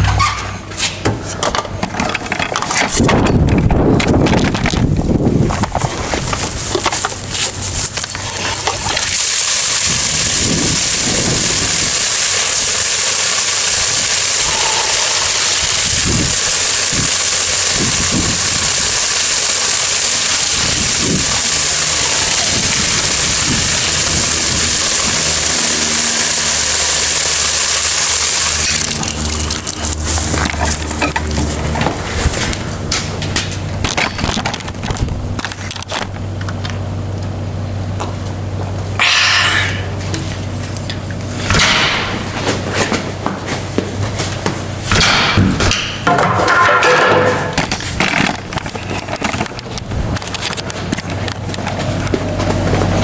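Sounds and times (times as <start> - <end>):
welding crackling hiss: 5.4 - 36.2, 44.1 - 53.0.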